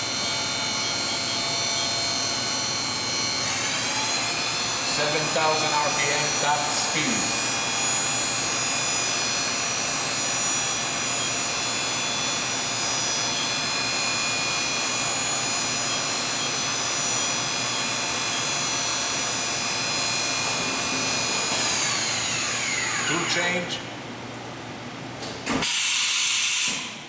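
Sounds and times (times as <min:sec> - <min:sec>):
machine spindle high whine: 0:00.0 - 0:24.0.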